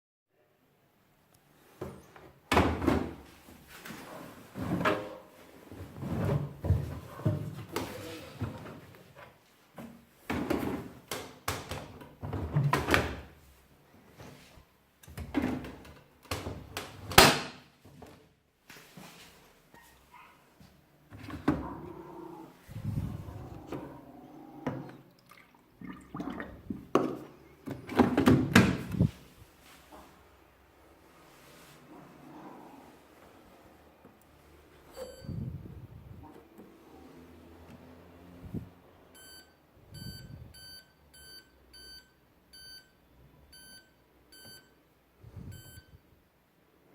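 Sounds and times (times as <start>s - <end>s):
washing machine low hum: 21.1s - 25.0s, 34.6s - 40.9s.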